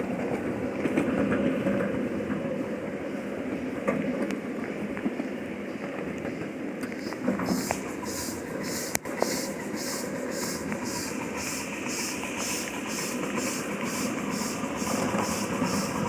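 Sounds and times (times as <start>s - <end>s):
wheels rumbling on rails: 0.0s - 16.0s
steam locomotive exhaust chuffing: 6.9s - 16.0s.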